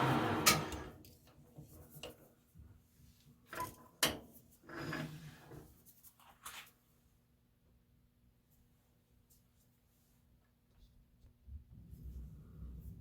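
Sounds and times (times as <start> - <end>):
metal lathe running: 0.0 - 0.9.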